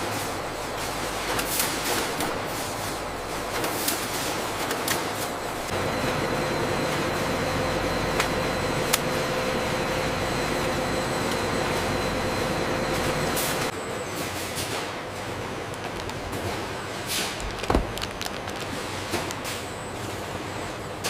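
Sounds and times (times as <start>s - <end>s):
industrial machinery hum: 0.0s - 21.0s
higher steady hum: 5.5s - 13.8s.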